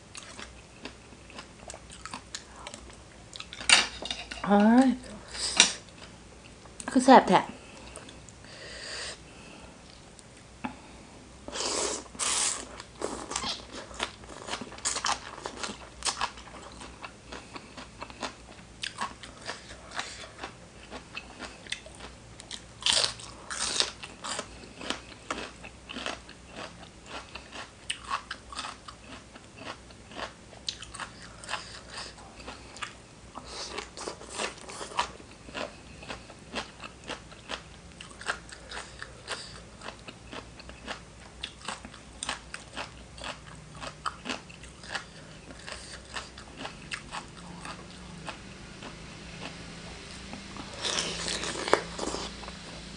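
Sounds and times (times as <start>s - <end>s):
crunchy bites and chewing: 11.6s - 49.5s, 50.4s - 52.4s.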